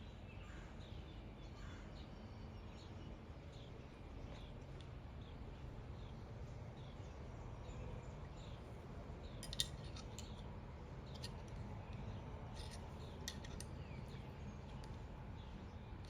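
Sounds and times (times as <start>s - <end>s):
low outdoor rumble: 0.0s - 16.0s
small birds chirping: 0.0s - 16.0s
metal hook clicking into tree: 9.4s - 10.5s, 11.1s - 14.0s.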